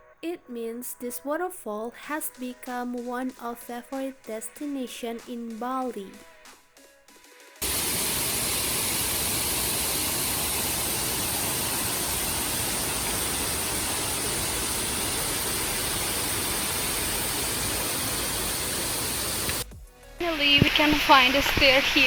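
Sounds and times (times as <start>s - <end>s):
waterfall rushing: 7.6s - 19.7s.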